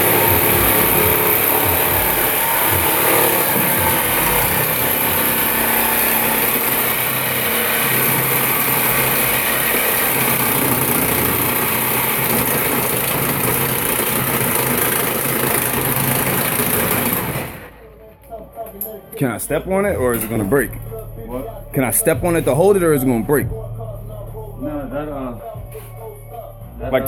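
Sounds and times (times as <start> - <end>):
power saw cutting metal pipe: 0.0 - 17.8.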